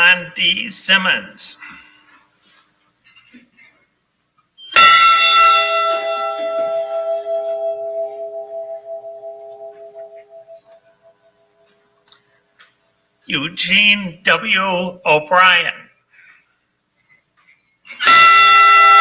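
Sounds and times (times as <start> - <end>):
ship's bell ringing: 4.8 - 11.7, 18.0 - 19.0.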